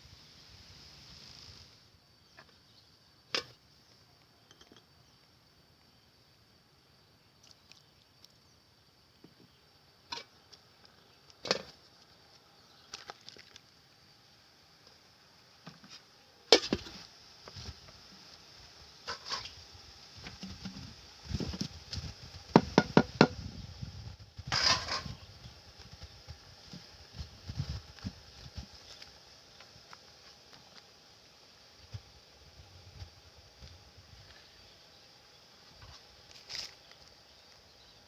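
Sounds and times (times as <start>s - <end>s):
knocks and taps of food preparation: 22.5s - 23.4s.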